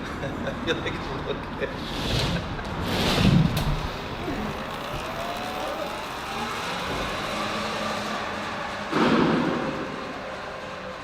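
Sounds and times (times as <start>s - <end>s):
electric motor whining: 3.6s - 8.9s.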